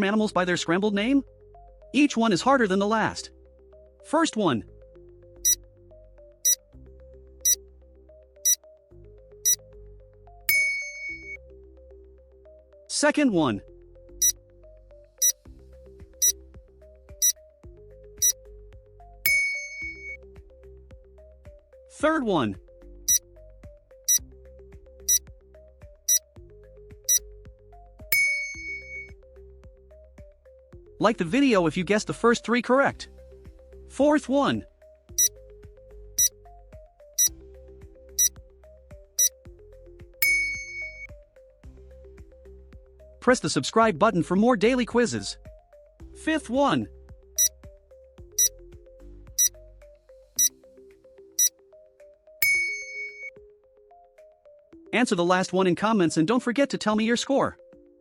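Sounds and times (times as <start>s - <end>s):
soft background music: 0.0s - 58.0s
bright chime: 10.5s - 11.4s, 19.3s - 20.2s, 28.1s - 29.1s, 40.2s - 41.1s, 52.4s - 53.3s
timer ticking: 10.5s - 11.4s, 19.3s - 20.2s, 28.1s - 29.0s, 40.2s - 41.1s, 52.4s - 53.3s.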